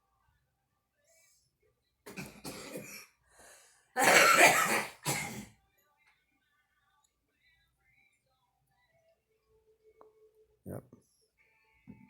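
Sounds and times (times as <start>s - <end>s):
woman coughing: 2.1s - 3.0s, 4.0s - 5.5s
short breath in: 3.3s - 3.9s.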